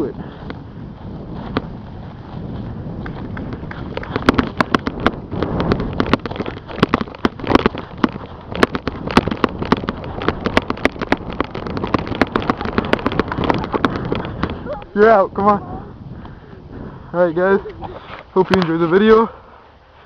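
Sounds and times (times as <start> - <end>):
wind on microphone: 0.0 - 19.3
rustling: 3.5 - 15.0.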